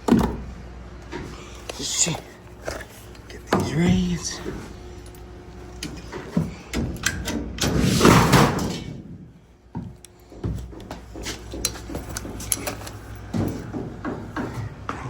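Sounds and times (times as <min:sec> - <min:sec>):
sheet metal scraping crash: 0:07.7 - 0:09.0
metal knocks and clanks: 0:09.8 - 0:14.7.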